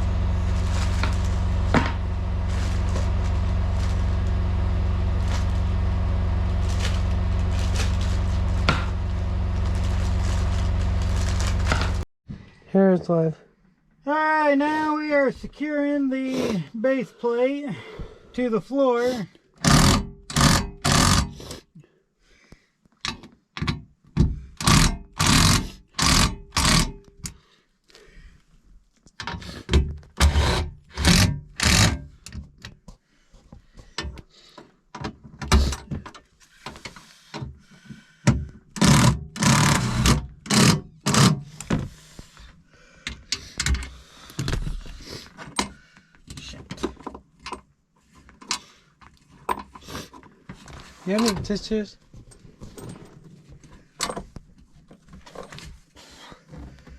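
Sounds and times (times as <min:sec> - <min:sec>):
faint motor whine: 0:00.0 - 0:12.0
drill-driver driving screws: 0:19.6 - 0:21.4, 0:24.6 - 0:26.9, 0:30.2 - 0:32.0, 0:38.8 - 0:41.7.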